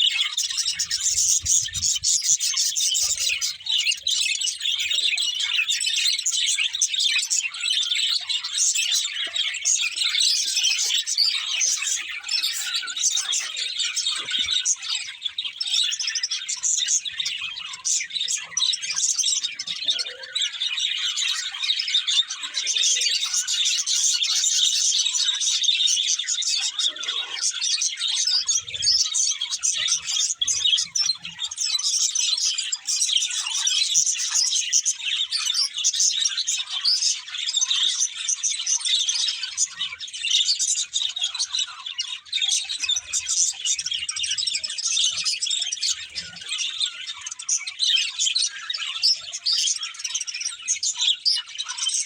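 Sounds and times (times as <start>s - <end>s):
budgerigars chattering: 0.0s - 52.0s.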